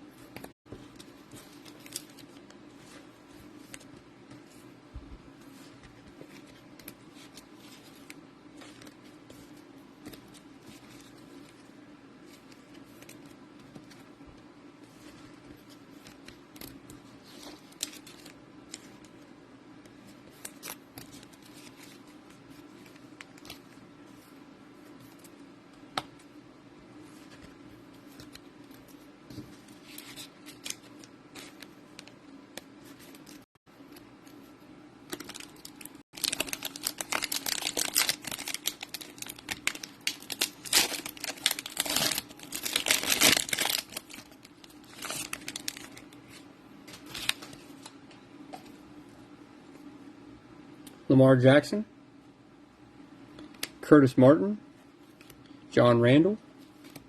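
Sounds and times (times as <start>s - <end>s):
card packs rustling: 35.1s - 47.9s.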